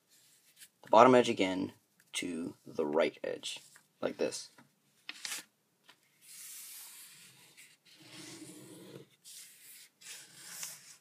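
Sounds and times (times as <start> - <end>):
paper rustle: 5.0 - 5.5
paper being folded and creased: 5.0 - 11.0.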